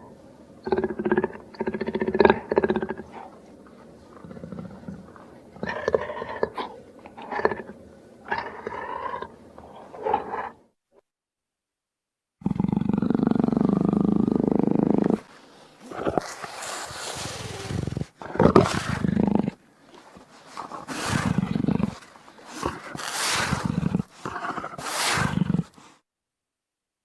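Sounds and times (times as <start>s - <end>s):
jaguar growling: 0.0s - 10.6s, 12.4s - 25.9s
jaguar roaring: 15.8s - 19.6s, 20.5s - 25.8s.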